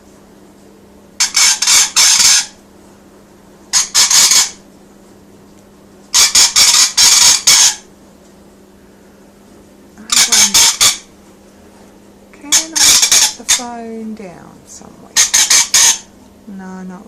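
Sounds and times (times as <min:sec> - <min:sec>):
parrot screeching: 0:01.2 - 0:02.6, 0:03.7 - 0:04.6, 0:06.2 - 0:07.9, 0:10.1 - 0:11.1, 0:12.5 - 0:13.7, 0:15.2 - 0:16.1.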